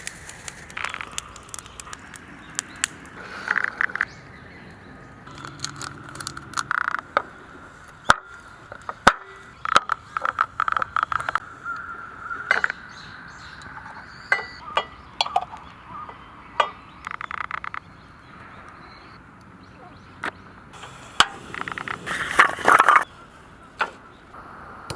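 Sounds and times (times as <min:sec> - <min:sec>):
steady hiss: 0:00.0 - 0:04.0, 0:20.7 - 0:24.9.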